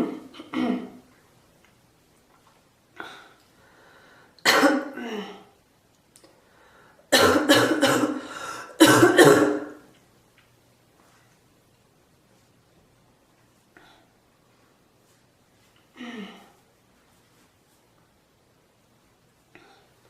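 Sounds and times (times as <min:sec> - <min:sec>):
person coughing: 0:00.0 - 0:01.0, 0:04.4 - 0:05.5, 0:07.1 - 0:09.8.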